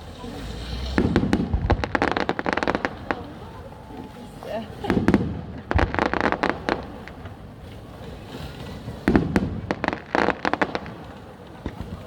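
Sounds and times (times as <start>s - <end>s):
firework sharp cracks: 0.4s - 3.7s, 4.7s - 12.0s
firework deep bang: 0.4s - 12.0s.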